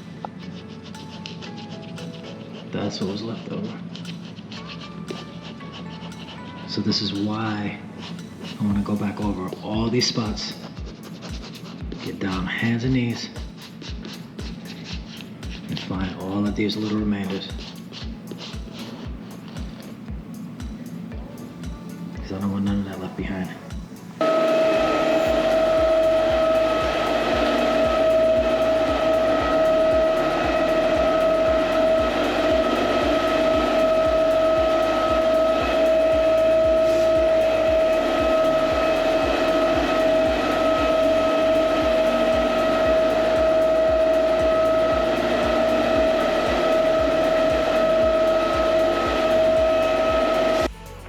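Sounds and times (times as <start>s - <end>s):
electric motor whining: 24.2s - 51.0s.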